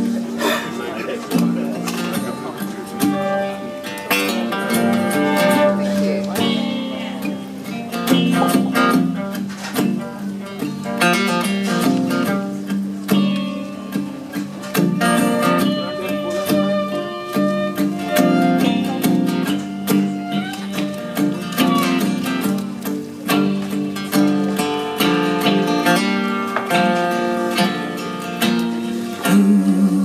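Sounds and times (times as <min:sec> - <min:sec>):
live band playing: 0:00.0 - 0:30.0
strummed acoustic guitar: 0:00.0 - 0:30.0.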